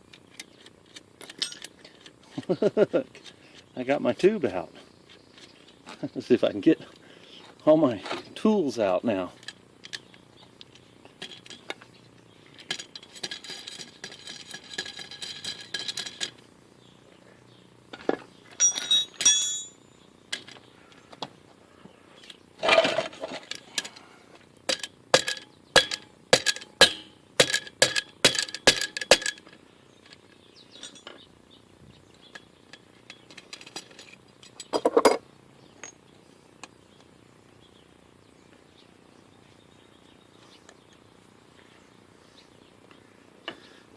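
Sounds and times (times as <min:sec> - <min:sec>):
metal tool parts clinking: 0:00.3 - 0:02.6, 0:12.6 - 0:16.4, 0:18.6 - 0:20.6, 0:24.7 - 0:31.2, 0:32.2 - 0:35.2
sharp metal knocks: 0:18.6 - 0:19.8, 0:24.7 - 0:29.5.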